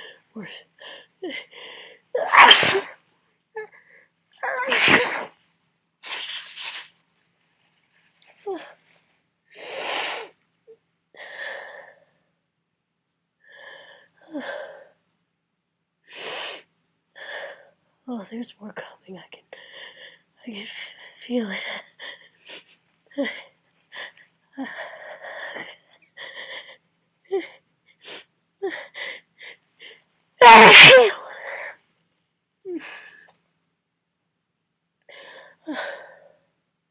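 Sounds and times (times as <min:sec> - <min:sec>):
man sneezing: 0:02.2 - 0:02.9, 0:04.6 - 0:05.3, 0:30.4 - 0:31.2.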